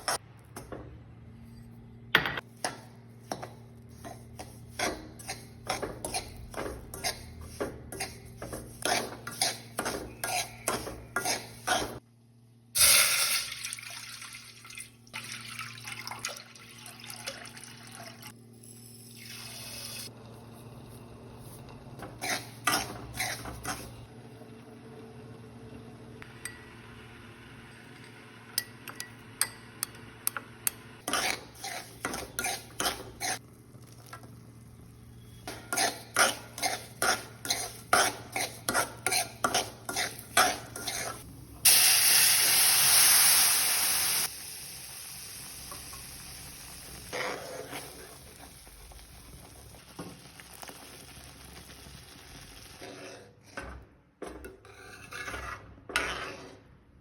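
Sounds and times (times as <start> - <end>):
spoon scraping metal pan: 3.3 - 12.0, 22.0 - 23.9, 31.0 - 33.4, 35.4 - 41.2, 54.5 - 56.7.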